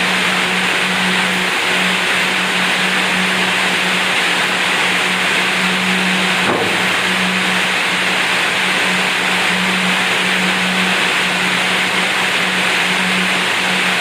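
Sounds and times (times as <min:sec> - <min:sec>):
electric motor humming: 0:00.0 - 0:14.0.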